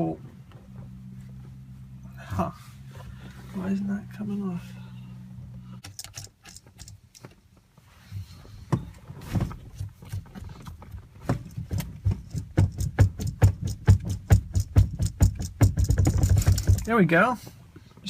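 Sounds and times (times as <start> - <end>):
steering wheel clunks and clicks: 8.6 - 17.0
steady rattling knock: 11.2 - 17.0.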